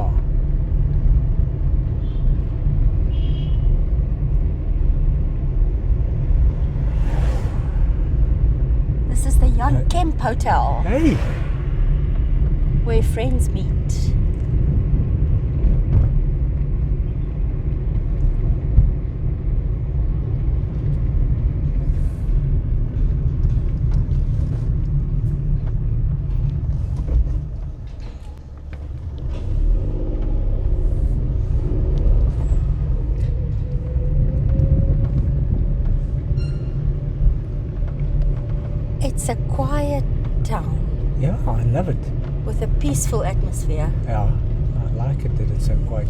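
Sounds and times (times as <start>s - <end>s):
car engine and tyres rumbling: 0.0s - 46.0s
faint rising whine: 6.4s - 9.1s.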